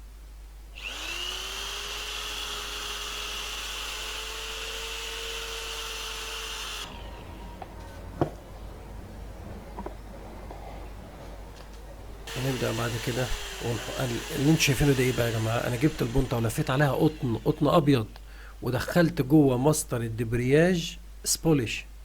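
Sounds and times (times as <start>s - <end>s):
electric drill spinning: 0.8s - 7.8s, 12.3s - 17.9s.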